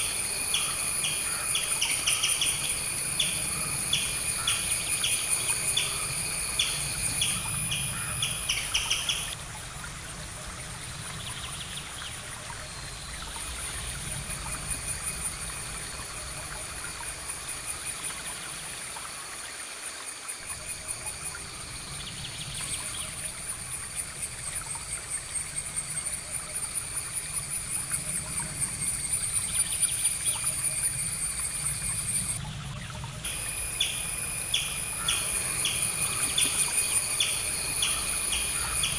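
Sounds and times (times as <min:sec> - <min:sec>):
insects trilling: 0:00.0 - 0:09.4, 0:10.4 - 0:38.9
bird-like chirps: 0:33.3 - 0:38.9.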